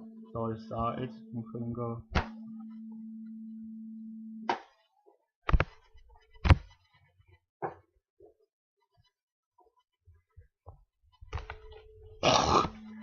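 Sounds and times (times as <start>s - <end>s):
steady hum: 0.0s - 4.6s.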